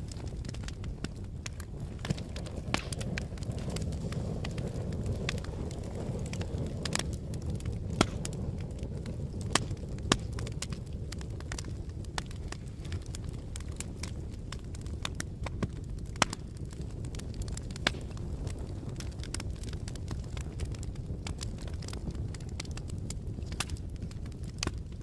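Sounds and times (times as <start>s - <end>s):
blowing wind: 0.0s - 19.7s
wood fire crackling: 0.0s - 25.0s.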